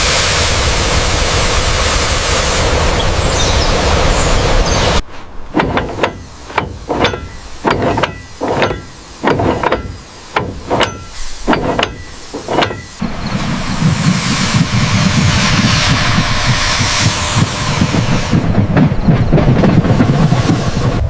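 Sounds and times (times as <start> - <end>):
loud steady hiss: 0.0 - 3.0
sharp metallic clanks: 5.6 - 13.2.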